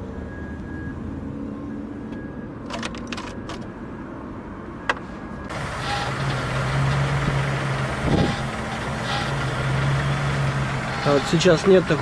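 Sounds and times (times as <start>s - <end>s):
car engine starting and idling: 5.4s - 12.0s.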